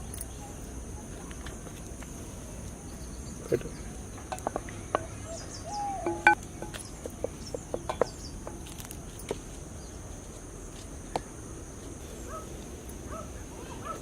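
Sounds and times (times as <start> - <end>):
bird chirps: 5.0 - 8.5.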